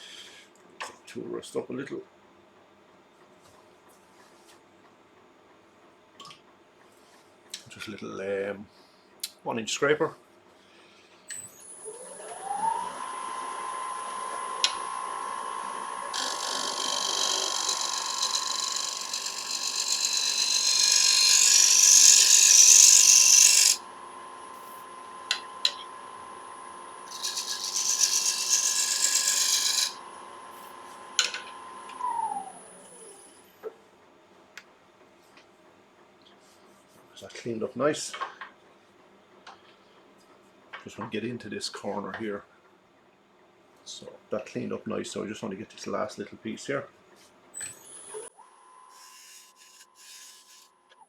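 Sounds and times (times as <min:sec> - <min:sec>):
wood lathe whining: 0:11.6 - 0:33.3, 0:48.9 - 0:51.0
scraper cutting wooden bowl: 0:16.1 - 0:23.8.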